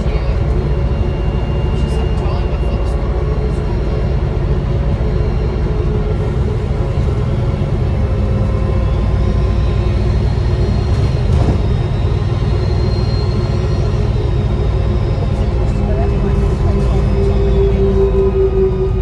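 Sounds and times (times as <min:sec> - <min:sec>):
bus engine low rumble: 0:00.0 - 0:19.0
faint turbocharger whistle: 0:08.8 - 0:19.0.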